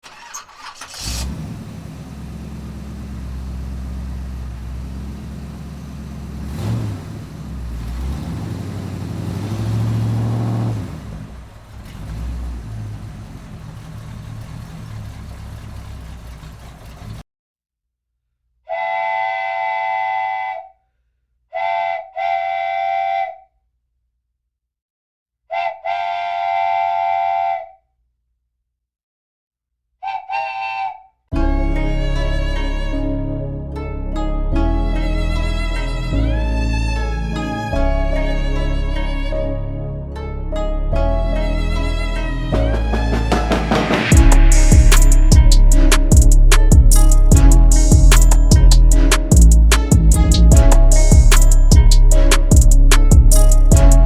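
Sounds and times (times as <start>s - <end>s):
loud mechanical rumble: 0.9s - 17.2s, 42.6s - 54.0s
long whistle-like blasts: 30.0s - 31.1s.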